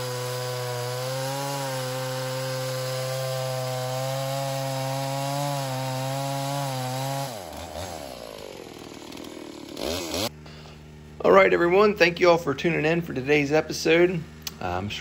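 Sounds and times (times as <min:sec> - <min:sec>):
chainsaw cutting log: 0:00.0 - 0:10.6.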